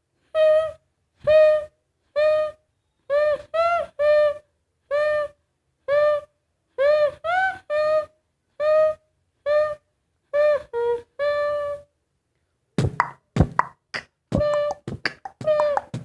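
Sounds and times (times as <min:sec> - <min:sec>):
percussive beatbox hits: 0:12.8 - 0:16.0
hooted hum-like mouth notes: 0:13.0 - 0:16.0.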